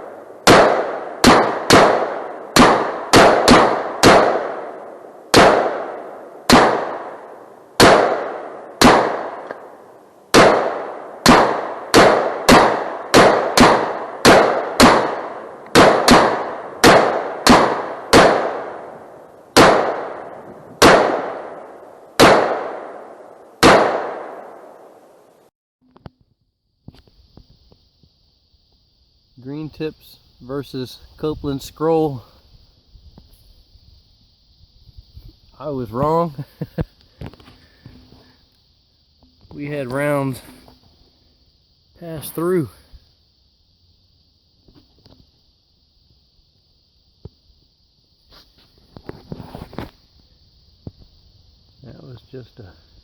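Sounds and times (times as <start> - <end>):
rifle shots echoing: 0.0 - 24.9.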